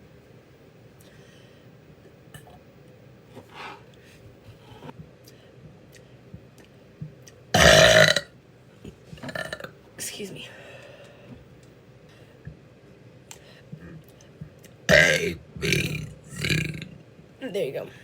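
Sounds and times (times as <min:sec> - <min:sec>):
woman burping: 0:07.6 - 0:08.3, 0:14.9 - 0:16.9.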